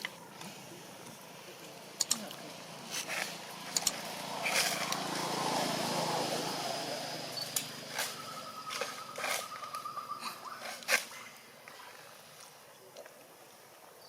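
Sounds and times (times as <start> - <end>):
vehicle engine passing: 0.5 - 11.0
sharp clicks: 2.0 - 2.4, 3.7 - 4.0.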